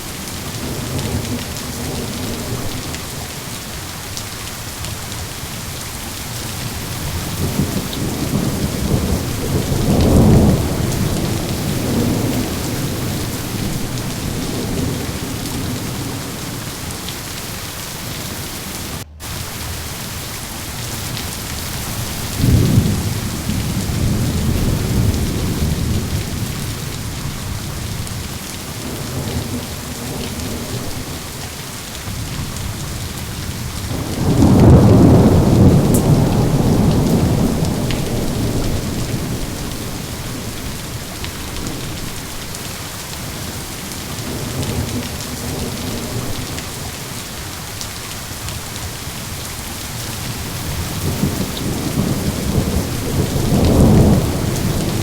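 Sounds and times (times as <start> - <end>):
steady rain: 0.0 - 55.0
rolling thunder: 6.3 - 20.2, 20.8 - 42.5, 50.0 - 55.0.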